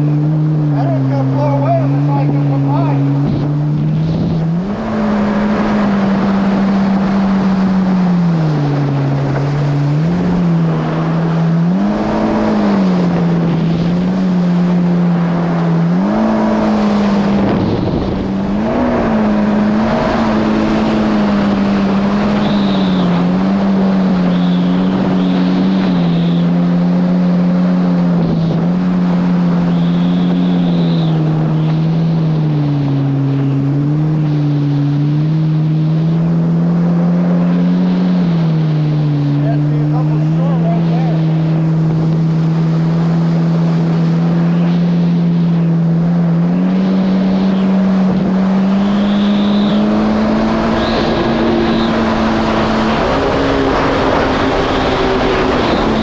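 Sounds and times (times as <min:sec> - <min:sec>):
jet ski engine revving: 0:00.0 - 0:56.0
rushing water noise: 0:00.0 - 0:56.0
short high whine: 0:16.6 - 0:26.8, 0:29.4 - 0:32.1, 0:46.6 - 0:56.0.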